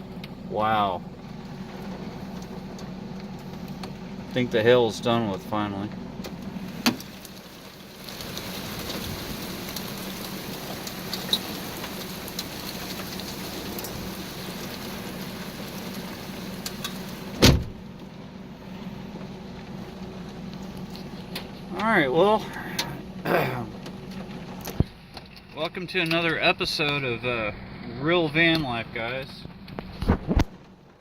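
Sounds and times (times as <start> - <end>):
low steady hum: 0.0 - 31.0
rain hissing on van: 0.0 - 31.0
loud thump: 17.4 - 17.8.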